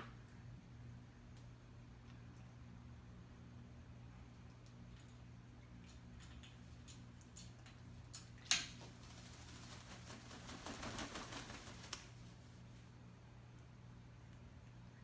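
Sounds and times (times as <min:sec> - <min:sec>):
parrot splashing in water: 0:05.0 - 0:12.3.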